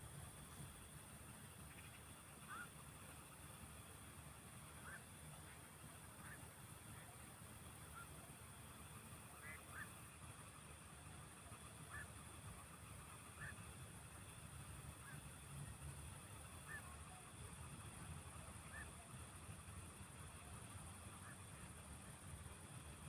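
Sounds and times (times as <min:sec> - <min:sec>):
faint honking animal calls: 0:09.3 - 0:10.0, 0:11.8 - 0:12.2, 0:13.3 - 0:13.7, 0:16.6 - 0:17.0.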